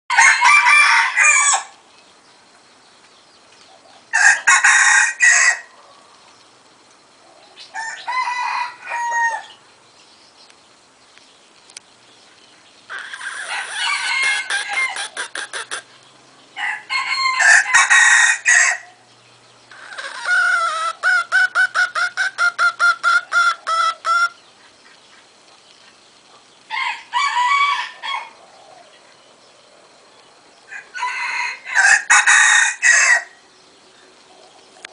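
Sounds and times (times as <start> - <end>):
rooster crowing: 0.1 - 1.7, 4.1 - 5.7, 7.7 - 9.6, 12.9 - 15.4, 16.6 - 19.0, 26.7 - 28.4, 30.7 - 33.4.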